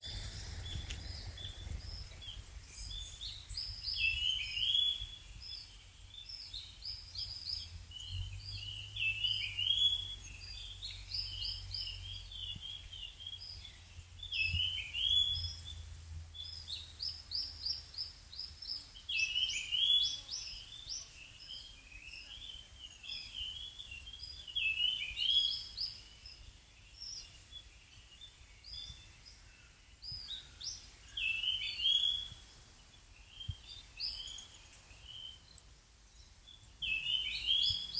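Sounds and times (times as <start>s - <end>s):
low wind rumble on microphone: 0.0s - 18.9s
songbird twittering: 0.0s - 37.9s.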